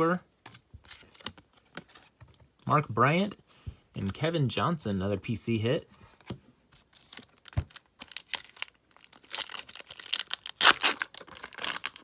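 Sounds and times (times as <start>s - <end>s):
wrapper tearing and crinkling: 7.0s - 12.0s.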